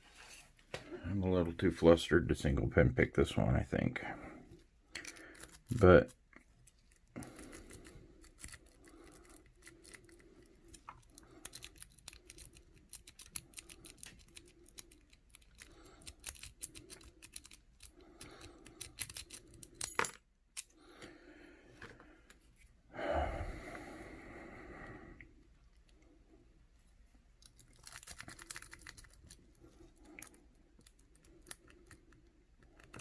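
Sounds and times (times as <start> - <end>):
lock pick clicking and scraping: 6.6 - 20.8.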